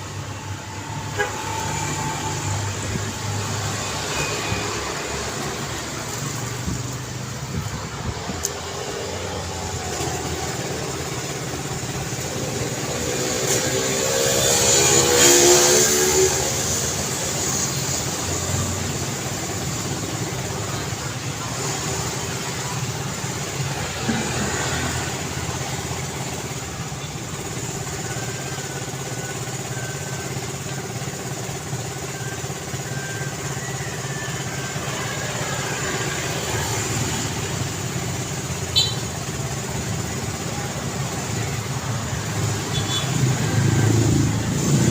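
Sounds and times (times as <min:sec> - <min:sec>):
road traffic noise: 0:00.0 - 0:44.9
vehicle passing close by: 0:01.5 - 0:17.6.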